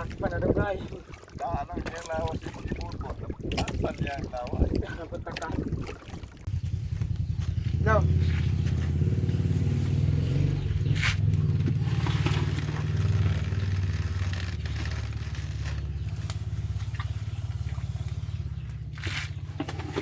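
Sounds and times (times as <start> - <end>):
small boat engine chugging: 0.0 - 20.0.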